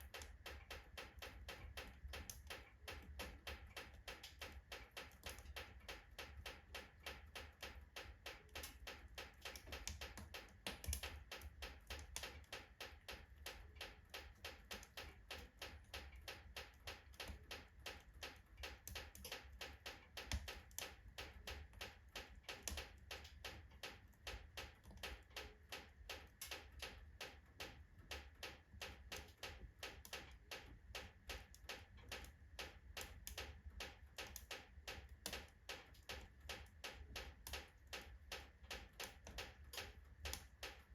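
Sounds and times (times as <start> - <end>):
logs crackling in fireplace: 31.9 - 40.9.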